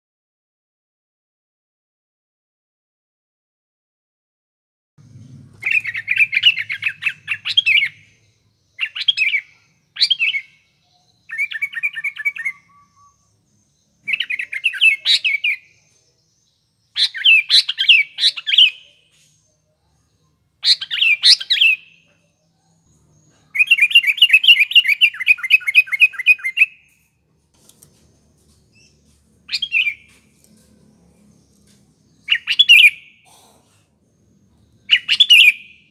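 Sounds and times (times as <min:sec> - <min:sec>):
bulbul singing: 0:05.5 - 0:27.2, 0:28.6 - 0:35.9.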